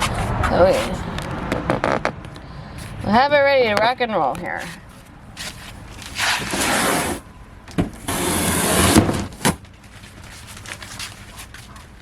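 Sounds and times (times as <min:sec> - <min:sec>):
box scraping and rustling: 0:04.6 - 0:07.2, 0:08.0 - 0:09.6.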